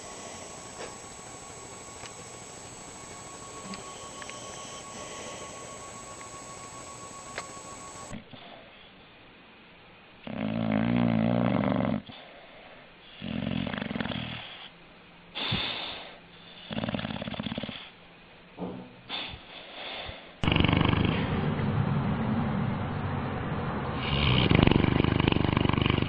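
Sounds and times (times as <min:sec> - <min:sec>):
dog snoring: 0:00.0 - 0:08.6, 0:10.2 - 0:12.4, 0:13.1 - 0:14.7, 0:15.4 - 0:18.0, 0:19.9 - 0:21.6, 0:24.0 - 0:26.0.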